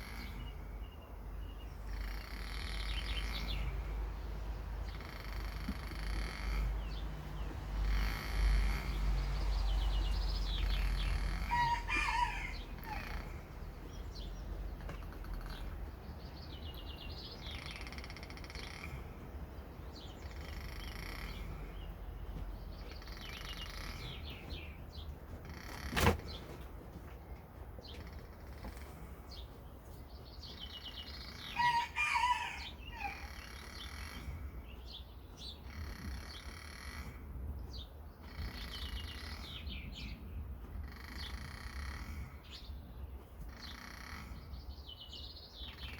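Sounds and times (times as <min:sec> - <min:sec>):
small birds chirping: 0:00.0 - 0:45.9
rooster crowing: 0:11.4 - 0:13.3, 0:31.5 - 0:33.3.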